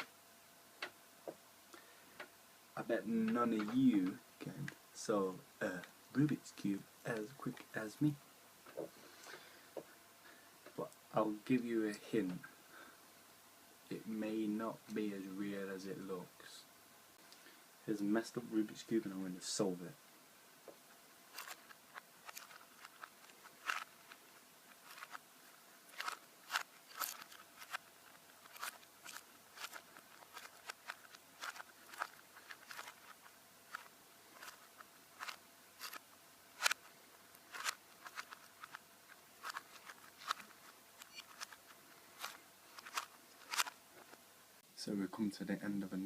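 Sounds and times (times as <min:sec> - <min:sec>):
puzzle cube clicking as twisted: 0:21.3 - 0:25.2, 0:25.9 - 0:27.8, 0:28.4 - 0:36.0, 0:37.4 - 0:38.8, 0:39.4 - 0:41.6, 0:42.2 - 0:43.8.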